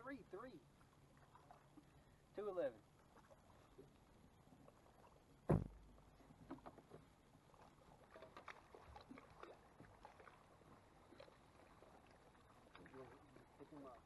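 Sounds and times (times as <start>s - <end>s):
sharp thump: 5.5s - 5.8s.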